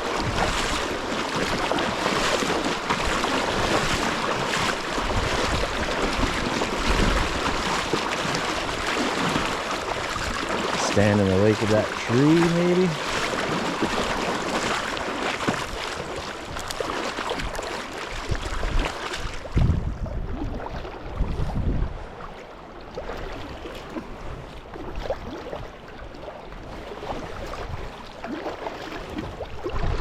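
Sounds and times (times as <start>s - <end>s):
river rushing and splashing: 0.0s - 19.6s.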